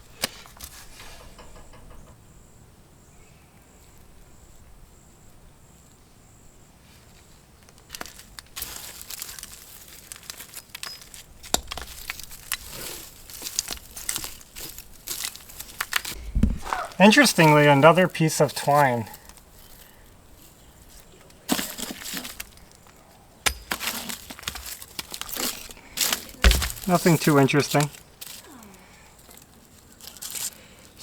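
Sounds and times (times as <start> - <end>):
dry debris rustling: 7.6 - 17.2, 18.7 - 31.0.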